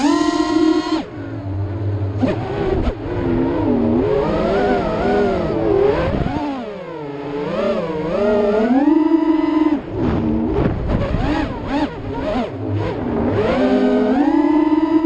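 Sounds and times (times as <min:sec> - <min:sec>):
drone motors buzzing whine: 0:00.0 - 0:15.0
low rumble: 0:09.8 - 0:13.4.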